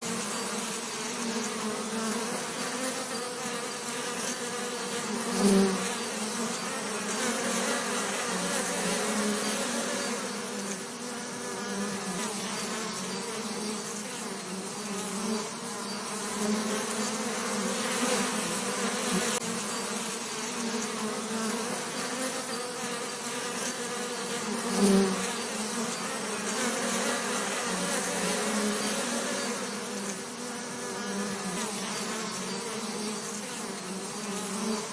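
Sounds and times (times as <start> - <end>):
bees buzzing: 0.0 - 34.9.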